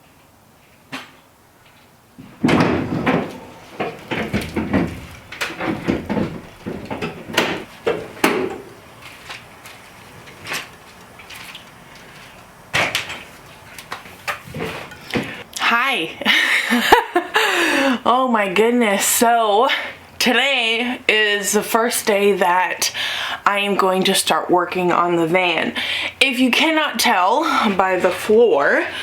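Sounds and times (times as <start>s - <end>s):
knocks clunks and rattles in van: 2.2s - 8.7s.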